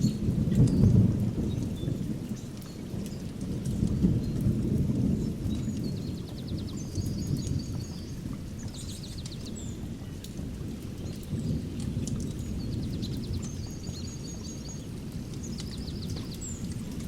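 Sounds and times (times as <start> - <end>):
distant thunder rumbling: 0.0 - 17.0
small birds chirping: 5.2 - 17.0.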